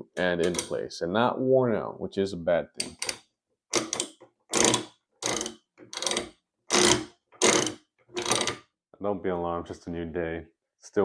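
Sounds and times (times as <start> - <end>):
sausage stuffer ratchet cranking: 2.8 - 8.6.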